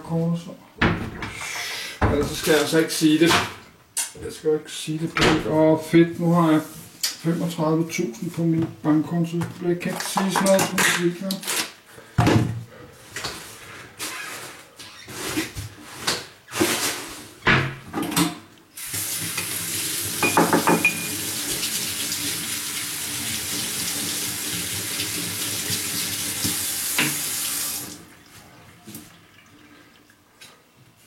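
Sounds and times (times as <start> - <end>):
objects knocking and clattering: 9.4 - 11.1, 20.2 - 21.1
tap water running into sink: 18.8 - 28.1.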